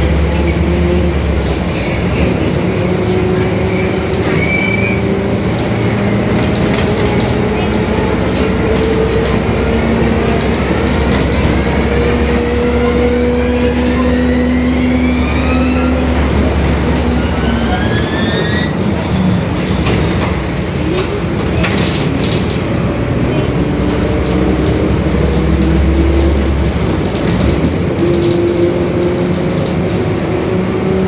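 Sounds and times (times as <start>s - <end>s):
bus differential growling: 0.0s - 31.0s
rattles: 21.4s - 30.3s.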